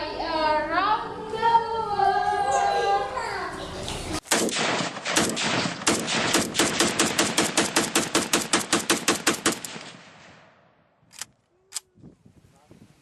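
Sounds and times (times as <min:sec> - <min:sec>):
rapid sharp cracks: 0:04.2 - 0:10.5.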